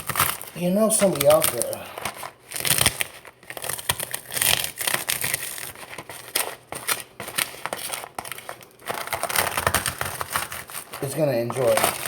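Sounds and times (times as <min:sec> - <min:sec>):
crunchy snacks being crushed: 0:00.0 - 0:12.0.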